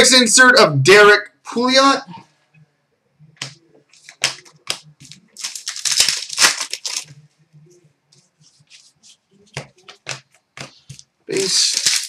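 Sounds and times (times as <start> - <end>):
packaging crinkling and crumpling: 5.0 - 7.2, 11.4 - 12.0
card packaging snapping: 5.1 - 7.1, 11.6 - 12.0.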